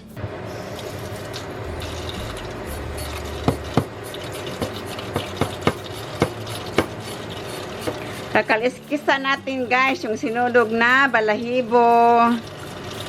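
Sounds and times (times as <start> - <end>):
tap water running into sink: 0.8 - 8.5, 9.8 - 13.0
sharp knocks on sink: 3.4 - 3.9, 4.6 - 7.0.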